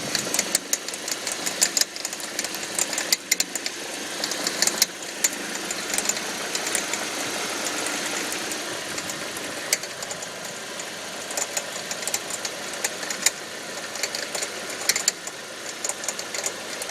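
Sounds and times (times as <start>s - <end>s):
car engine running: 0.0s - 16.9s
rattle of sharp ticks: 0.0s - 16.9s.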